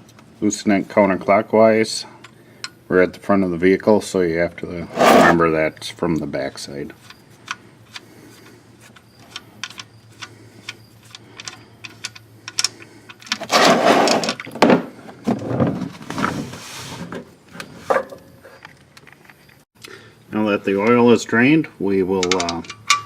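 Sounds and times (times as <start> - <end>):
wrench clicking: 7.0 - 13.4, 22.2 - 23.0.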